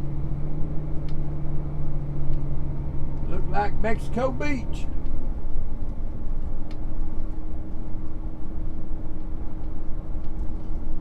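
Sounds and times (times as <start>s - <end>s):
road and engine rumble: 0.0s - 11.0s.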